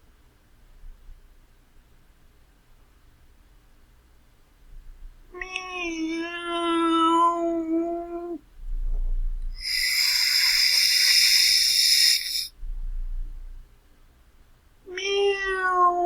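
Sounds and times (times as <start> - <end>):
cat meowing: 5.4 - 8.4, 9.6 - 12.5, 14.9 - 16.0
cat hissing: 9.6 - 12.5.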